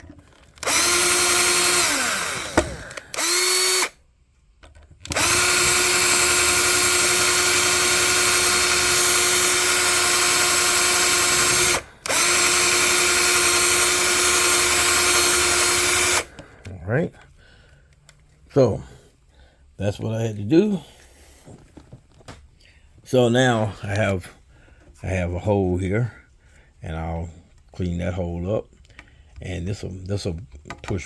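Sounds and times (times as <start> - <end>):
electric drill whining: 0.3 - 4.0, 5.0 - 16.5.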